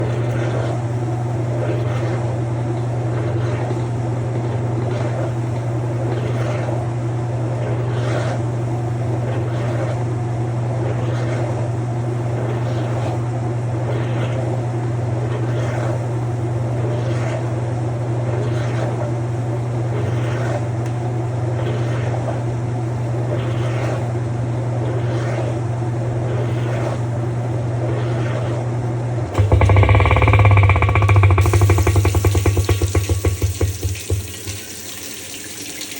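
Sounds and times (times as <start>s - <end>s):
vehicle engine drone: 29.3s - 34.3s.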